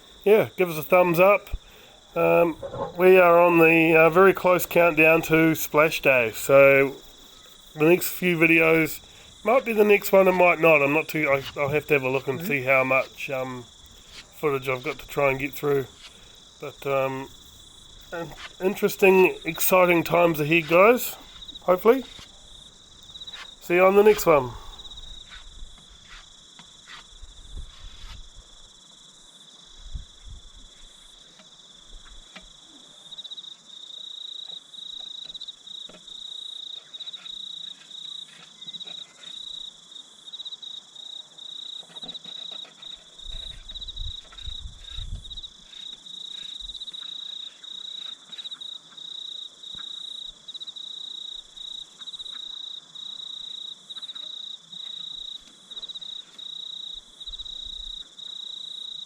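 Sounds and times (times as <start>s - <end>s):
insects chirping trill: 0.0s - 59.0s
low bumps: 1.4s - 5.6s.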